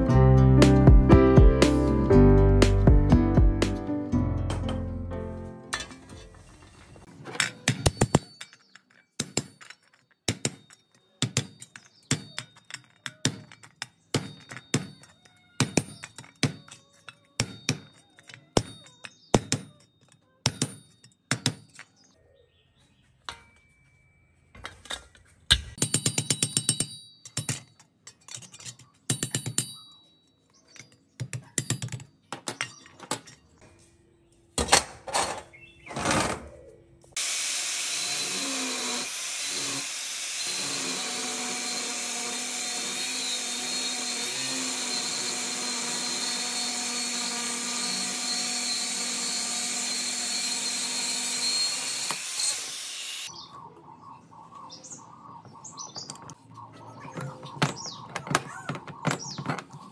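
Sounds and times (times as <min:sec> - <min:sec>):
metal knocks and clinks: 0:07.3 - 0:22.0, 0:24.6 - 0:33.6.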